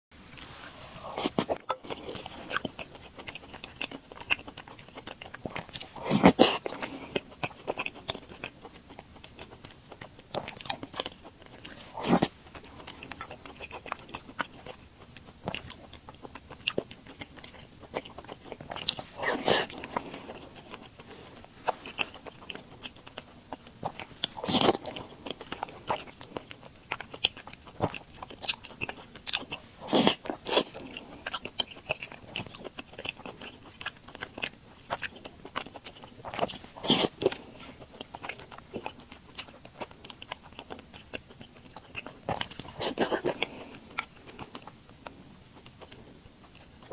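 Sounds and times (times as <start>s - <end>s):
chewing soft food: 0.2s - 46.9s
wet mouth sounds: 0.3s - 9.4s, 10.4s - 14.6s, 15.5s - 26.2s, 34.4s - 44.7s.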